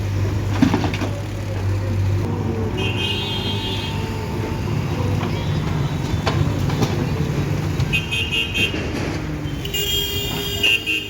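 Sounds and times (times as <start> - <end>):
heavy diesel machinery running: 0.0 - 11.0
high horn-like tone: 2.7 - 7.0.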